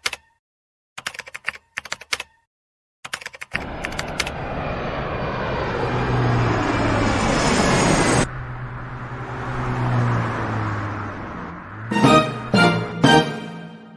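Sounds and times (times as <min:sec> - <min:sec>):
engine-like roar with low hum: 0:03.6 - 0:13.1.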